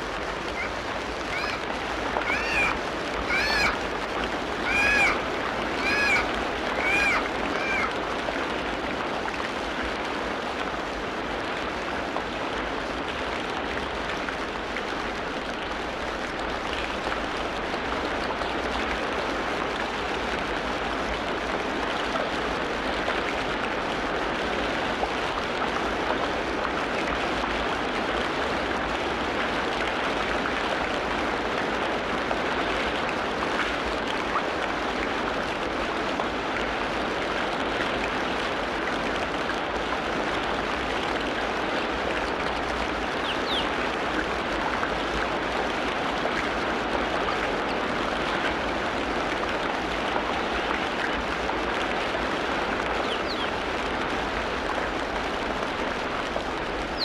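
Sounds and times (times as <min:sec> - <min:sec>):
running water: 0:00.0 - 0:57.0
faint bird calls: 0:00.4 - 0:08.0, 0:43.2 - 0:43.8, 0:53.0 - 0:53.6.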